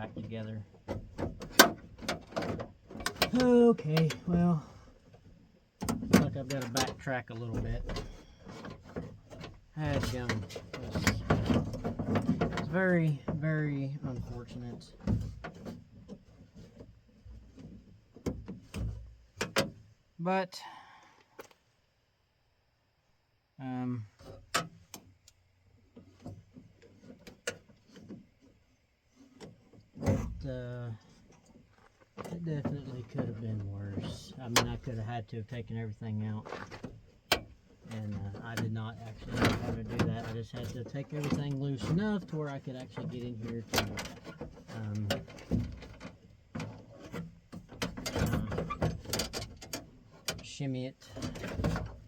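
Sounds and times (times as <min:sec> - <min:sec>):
soft rustling: 0:30.9 - 0:33.9.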